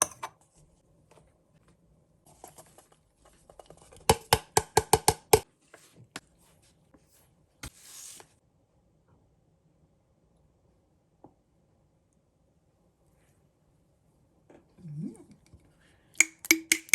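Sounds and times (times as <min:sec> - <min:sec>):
utensil clicks: 0:16.2 - 0:16.9.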